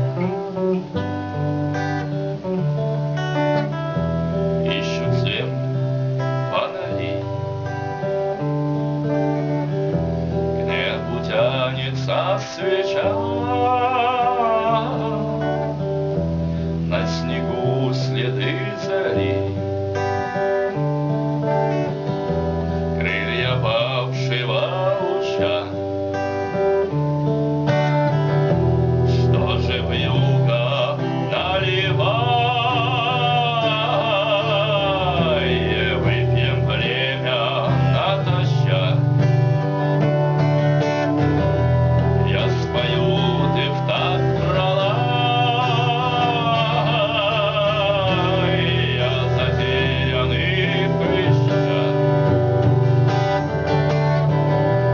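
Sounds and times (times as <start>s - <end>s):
bass line: 0.0s - 26.1s, 26.9s - 54.9s
man singing with vibrato: 0.0s - 53.9s
song with guitar: 0.0s - 54.9s
person singing long wavering note: 29.1s - 39.0s, 42.2s - 52.3s.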